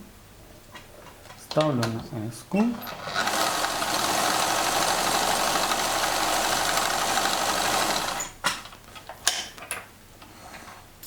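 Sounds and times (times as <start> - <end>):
sewing machine running: 2.9 - 8.4.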